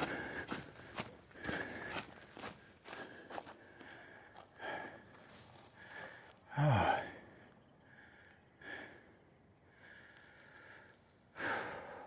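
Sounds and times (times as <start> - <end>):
person breathing: 5.7 - 12.0.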